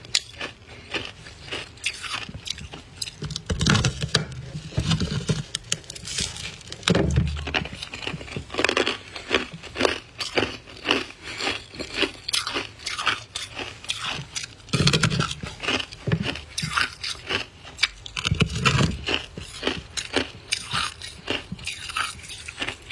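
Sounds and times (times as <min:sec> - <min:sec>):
chewing crunchy ice: 0:00.0 - 0:22.9.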